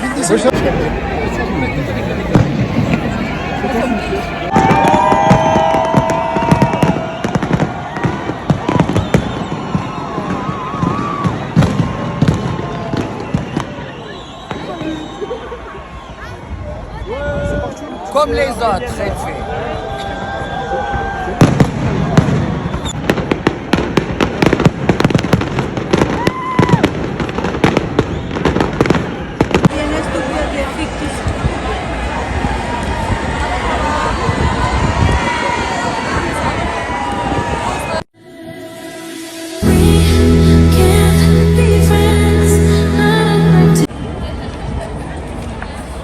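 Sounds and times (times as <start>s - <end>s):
fireworks bangs and crackles: 0.4s - 15.7s, 20.9s - 33.4s
whistling fireworks: 0.6s - 18.6s, 19.7s - 30.0s
short steady tone: 38.9s - 43.9s.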